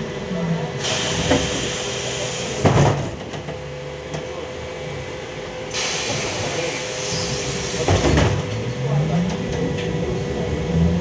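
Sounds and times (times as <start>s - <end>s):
trolleybus cabin rumble and hum: 0.0s - 11.0s
hiss: 0.8s - 2.8s, 5.7s - 8.2s.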